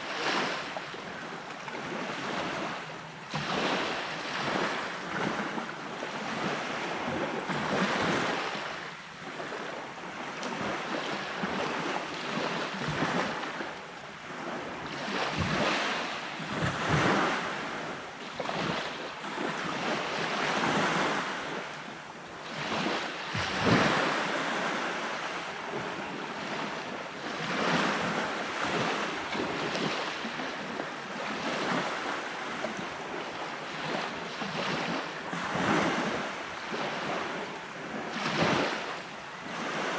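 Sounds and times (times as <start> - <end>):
surf breaking on a beach: 0.0 - 39.9.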